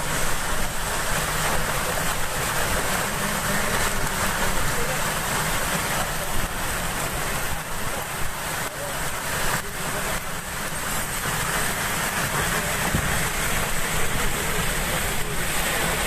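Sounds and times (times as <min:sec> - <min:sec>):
heavy rain: 0:00.0 - 0:16.0.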